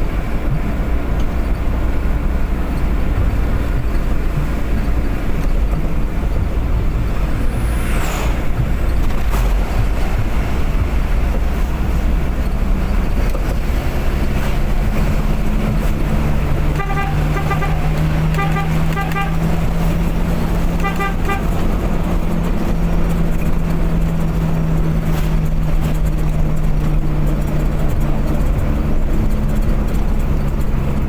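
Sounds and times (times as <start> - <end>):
car driving fast on highway: 0.0 - 31.0
falling whoosh: 7.1 - 9.8
vehicle horn toots: 16.6 - 19.9, 20.6 - 21.9.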